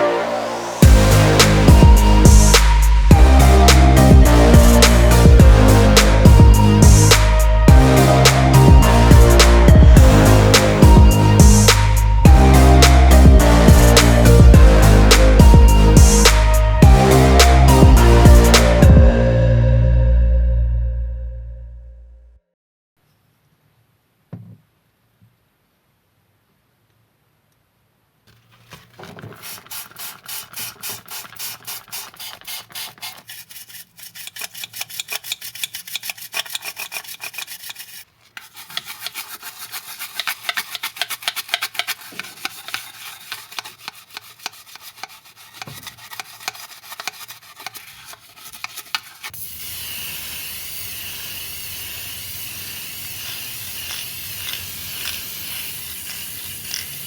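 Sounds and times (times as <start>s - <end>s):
rasping strokes of hand sanding: 29.1s - 49.4s, 53.0s - 57.0s
steady hiss: 49.4s - 57.0s.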